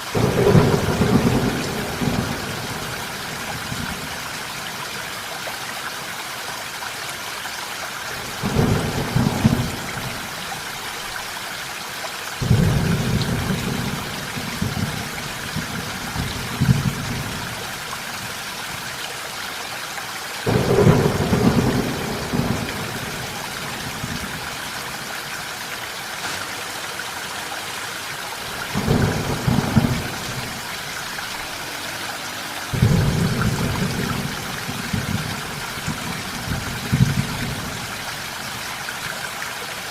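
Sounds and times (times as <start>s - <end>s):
steady rainfall: 0.0s - 39.9s
thunder rumbling: 0.2s - 4.2s, 8.4s - 10.4s, 12.4s - 17.6s, 20.5s - 25.0s, 28.5s - 38.0s.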